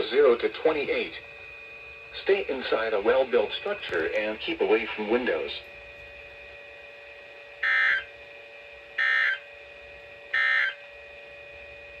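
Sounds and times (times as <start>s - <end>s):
faint steady hum: 0.0s - 12.0s
buzzing digital tone bursts: 7.6s - 8.1s, 9.0s - 9.4s, 10.3s - 10.8s.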